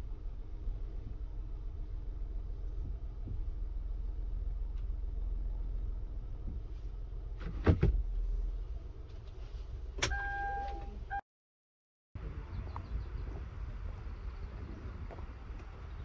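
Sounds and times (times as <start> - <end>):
low rumble: 0.0 - 10.0
steady beep: 10.1 - 11.2.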